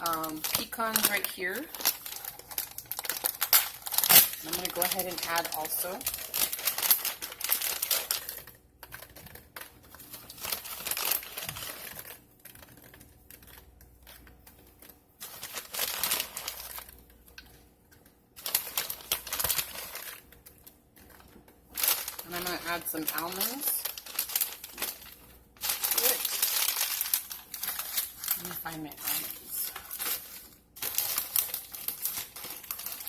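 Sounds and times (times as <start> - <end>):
pecans poured from plastic bag: 21.8 - 33.0.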